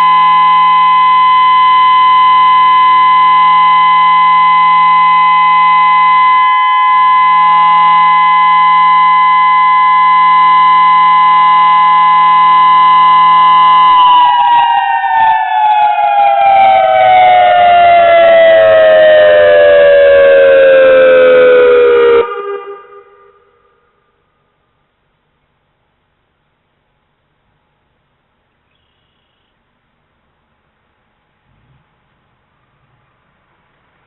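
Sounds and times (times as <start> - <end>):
warning siren winding down: 0.0 - 23.7.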